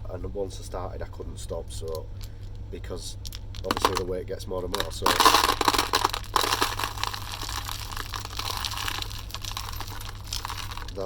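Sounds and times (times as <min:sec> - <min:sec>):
small metal contacts clinking: 0:04.8 - 0:11.0.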